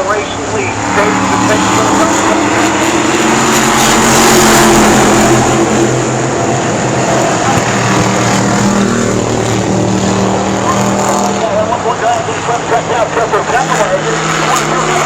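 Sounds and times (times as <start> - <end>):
race car engines passing: 0.0 - 15.0.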